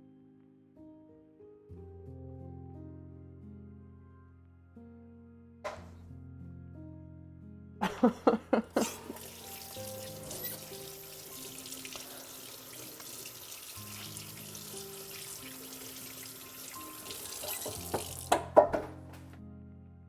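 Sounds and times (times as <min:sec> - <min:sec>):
tap water running into sink: 0:08.8 - 0:19.0.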